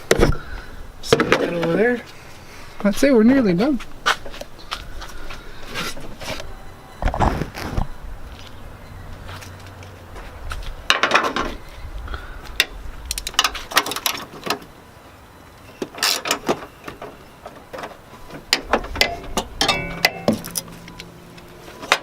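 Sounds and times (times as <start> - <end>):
hand tools and metal parts clattering: 1.0 - 2.2, 9.3 - 11.6, 12.6 - 14.7, 15.6 - 22.0.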